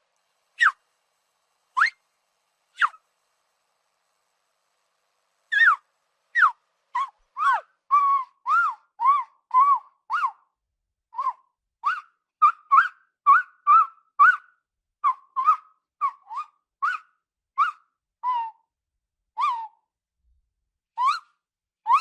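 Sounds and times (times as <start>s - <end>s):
tapir whistling squeaks: 0.6s - 0.8s, 1.8s - 2.0s, 2.8s - 3.0s, 5.5s - 5.8s, 6.4s - 10.4s, 21.0s - 21.2s.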